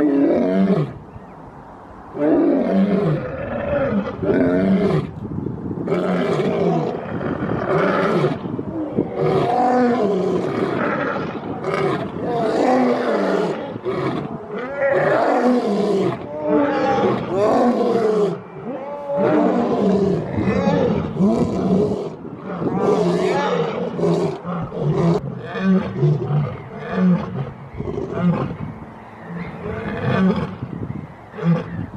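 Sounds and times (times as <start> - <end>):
lions roaring: 5.9 - 28.6.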